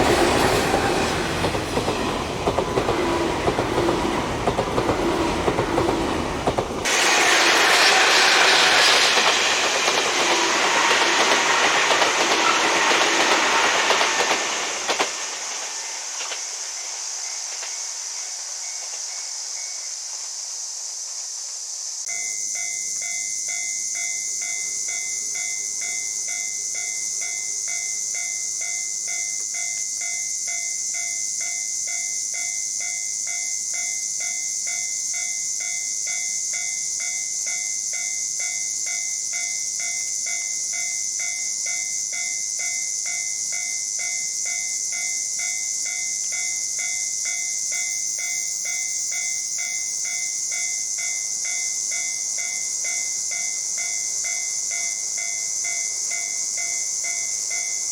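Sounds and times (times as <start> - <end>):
high-pitched hiss: 0.0 - 57.9
level crossing warning bell: 22.1 - 57.9.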